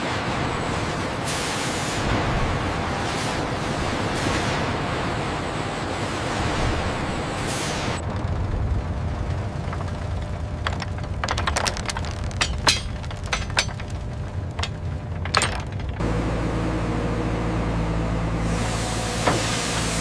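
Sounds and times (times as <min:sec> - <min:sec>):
low engine drone: 0:03.9 - 0:20.0
sharp irregular knocks and clacks: 0:09.7 - 0:16.0.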